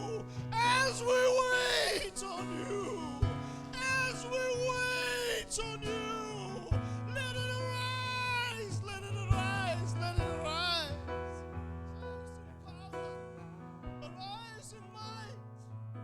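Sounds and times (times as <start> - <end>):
person singing long notes: 0.0 - 11.0.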